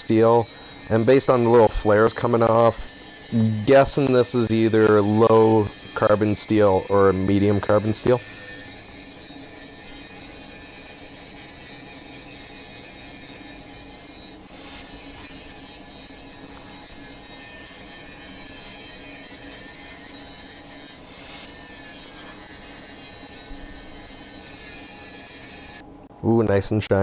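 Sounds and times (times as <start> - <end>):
power grinder on steel: 0.0 - 25.8.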